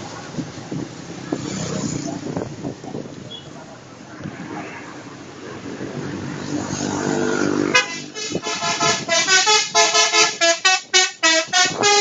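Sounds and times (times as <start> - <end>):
bus engine noise: 0.0 - 12.0
musical bus horn melody: 7.6 - 12.0.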